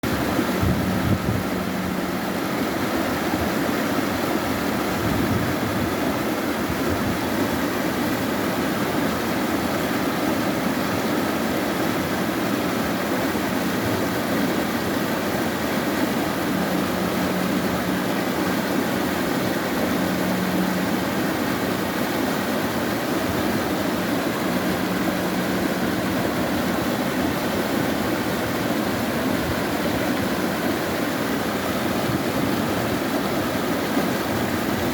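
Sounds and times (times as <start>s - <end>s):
stream rushing over rocks: 0.0s - 34.9s.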